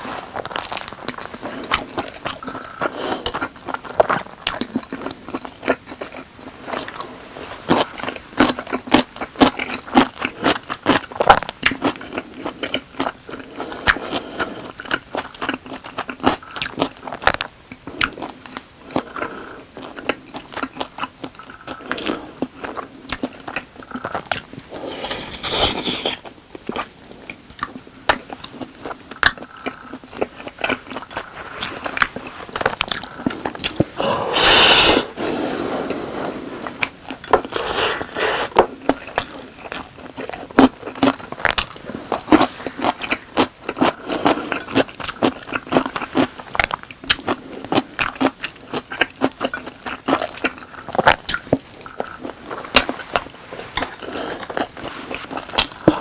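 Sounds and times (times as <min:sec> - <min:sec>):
chewing and crunching food: 0:00.0 - 0:56.0
hissy burst: 0:24.9 - 0:26.2, 0:34.0 - 0:35.3.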